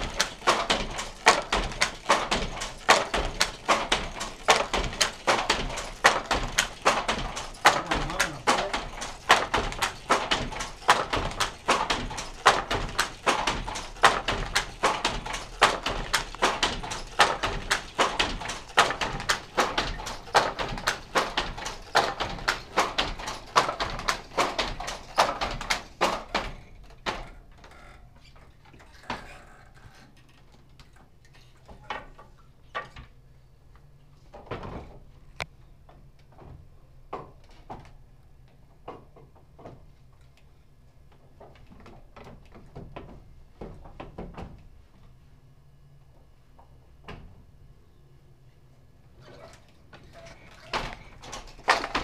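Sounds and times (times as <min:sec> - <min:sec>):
heavy loom thump: 0:00.0 - 0:27.5, 0:50.0 - 0:52.0
hand loom clacking: 0:00.0 - 0:27.8, 0:49.3 - 0:52.0.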